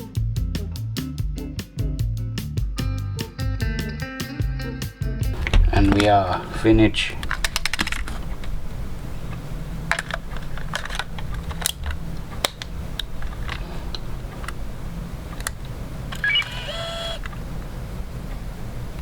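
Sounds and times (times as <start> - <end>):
camera handling clicks: 7.2 - 8.6, 9.3 - 17.4
short whirring tone: 16.0 - 18.0.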